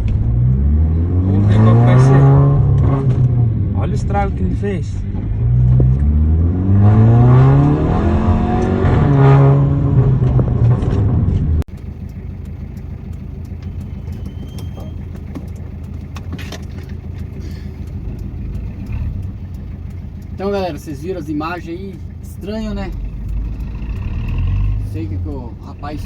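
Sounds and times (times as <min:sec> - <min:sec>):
road noise: 0:00.0 - 0:26.0
traffic noise: 0:00.0 - 0:26.0
vehicle engine accelerating: 0:00.0 - 0:26.0
scattered clicks: 0:11.7 - 0:26.0.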